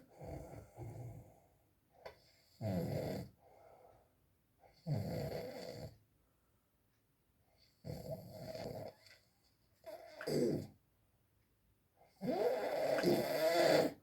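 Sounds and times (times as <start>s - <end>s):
quiet breathing: 0.0s - 2.6s, 3.2s - 4.8s
person snoring: 10.2s - 10.7s, 12.2s - 14.0s.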